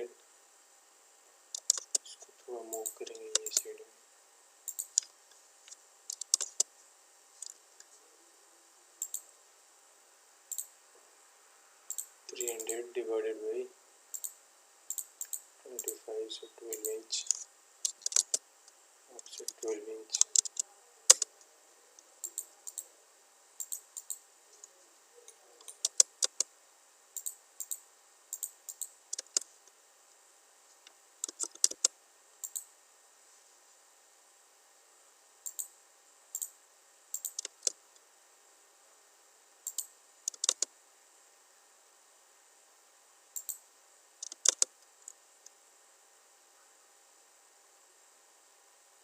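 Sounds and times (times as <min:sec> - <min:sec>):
mouse and keyboard clicks: 0:01.6 - 0:02.1, 0:02.7 - 0:03.6, 0:04.7 - 0:05.1, 0:06.1 - 0:06.7, 0:09.0 - 0:09.2, 0:14.2 - 0:16.0, 0:16.7 - 0:18.4, 0:19.3 - 0:21.3, 0:25.6 - 0:26.5, 0:28.4 - 0:29.5, 0:31.2 - 0:32.7, 0:35.5 - 0:35.7, 0:37.2 - 0:37.8, 0:39.7 - 0:40.7, 0:44.2 - 0:45.2.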